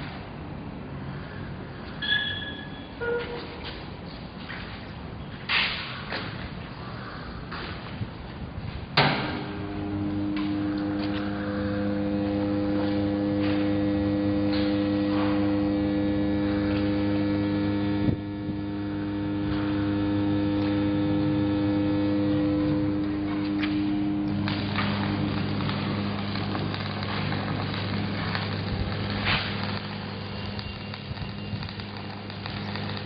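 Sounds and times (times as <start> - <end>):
welding arc buzzing: 9.0 - 33.0
welding arc striking crack: 9.0 - 33.0.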